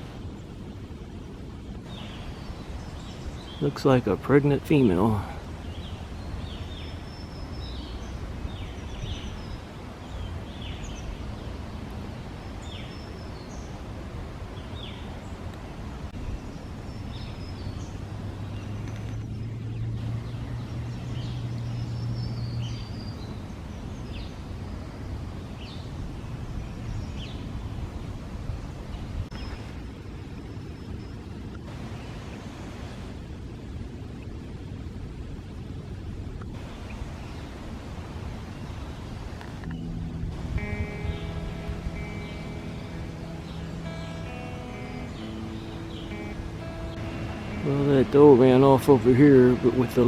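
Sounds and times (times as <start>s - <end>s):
small birds chirping: 1.9s - 29.8s, 36.4s - 50.0s
steady low rumble: 33.0s - 50.0s
low hum: 39.5s - 50.0s.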